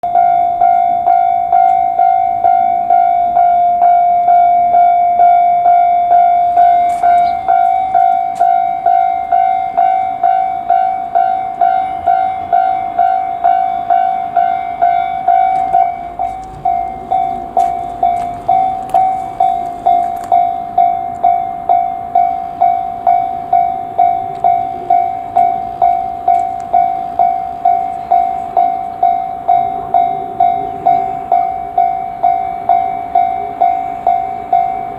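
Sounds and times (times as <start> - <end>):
level crossing bell ringing: 0.0 - 34.9
faint train wheel clicks: 15.5 - 21.4.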